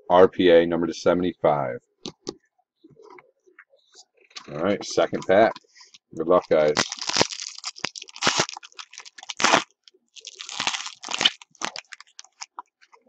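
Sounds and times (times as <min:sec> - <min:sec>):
foil wrapper crinkling: 0:05.4 - 0:13.0.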